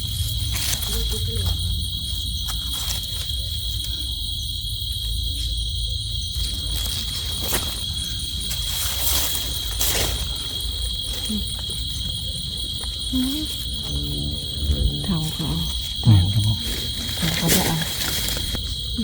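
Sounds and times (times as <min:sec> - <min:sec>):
crickets trilling: 0:00.0 - 0:19.0
low rumble: 0:13.6 - 0:17.2.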